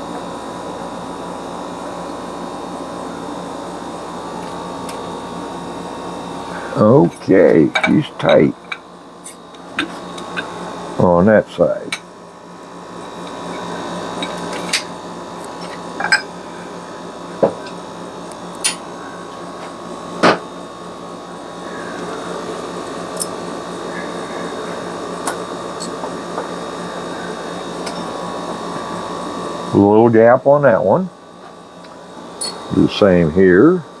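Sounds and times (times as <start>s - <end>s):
steady hum: 0.0s - 34.0s
metal tools clinking: 32.4s - 32.6s.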